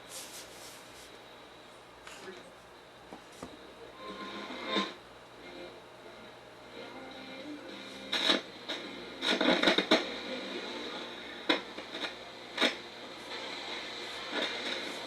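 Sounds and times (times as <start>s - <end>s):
radio speaker crackling static: 3.4s - 15.0s.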